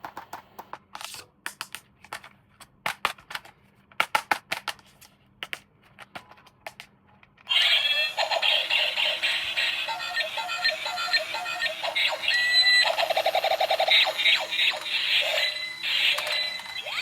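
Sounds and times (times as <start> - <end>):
toy speaker electronic tune: 7.5 - 17.0.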